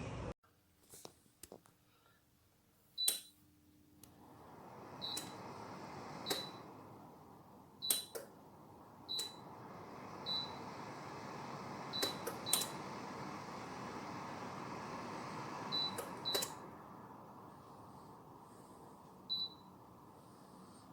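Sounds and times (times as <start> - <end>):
touch buttons beeping: 3.0 - 3.3
heater fan rush of air: 3.9 - 20.9.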